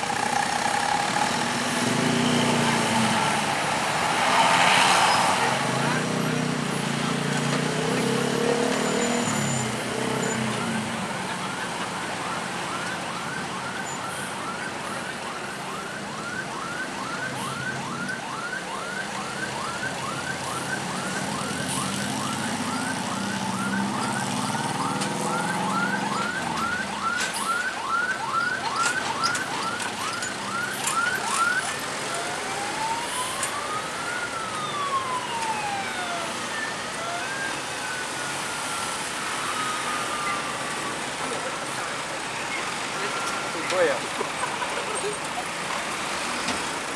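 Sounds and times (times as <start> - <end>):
bus horn siren pattern: 4.9 - 33.4.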